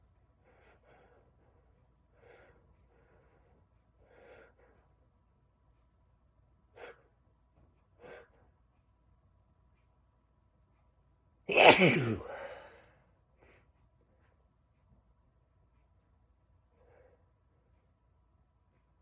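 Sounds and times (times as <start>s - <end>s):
sharp catches of breath: 11.5s - 13.0s.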